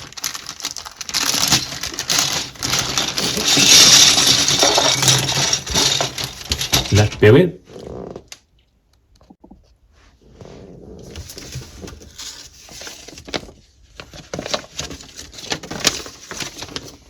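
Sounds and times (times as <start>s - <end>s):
plastic bricks clicking and rustling: 0.0s - 7.2s, 11.2s - 17.0s.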